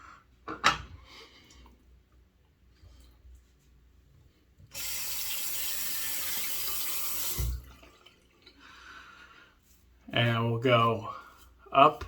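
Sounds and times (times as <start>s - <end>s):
tap water running into basin: 4.7s - 8.6s.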